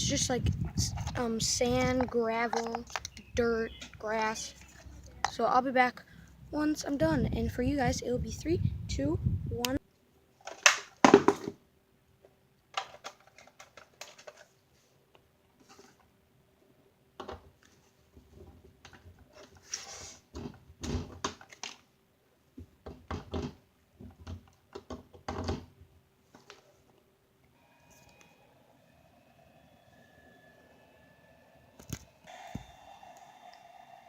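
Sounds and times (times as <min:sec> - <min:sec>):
handling clicks taps and knocks: 0:01.8 - 0:04.0
faint steady hum: 0:25.8 - 0:34.0.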